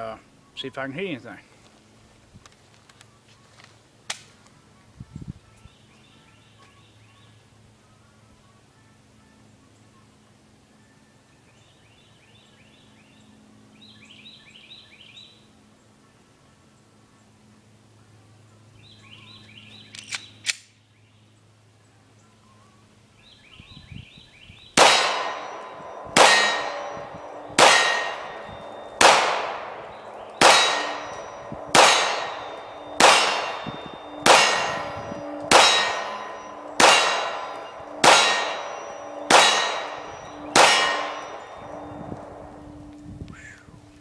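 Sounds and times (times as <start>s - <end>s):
small clicks: 19.9s - 20.7s
pistol shots: 24.8s - 42.5s.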